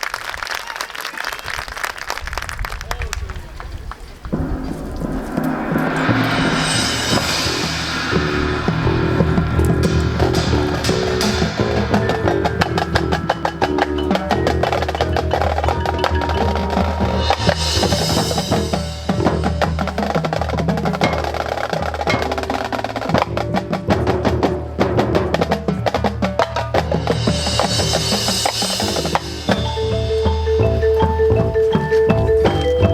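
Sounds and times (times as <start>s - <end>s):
drum rolls and strokes: 4.2s - 32.9s
marching band playing: 4.4s - 32.9s.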